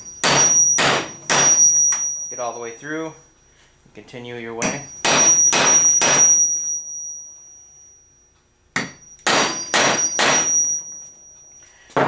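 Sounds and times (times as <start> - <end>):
hammer striking metal punch: 0.0 - 2.2, 4.6 - 6.8, 8.7 - 10.8
high metallic ring: 0.0 - 3.2, 4.6 - 12.0.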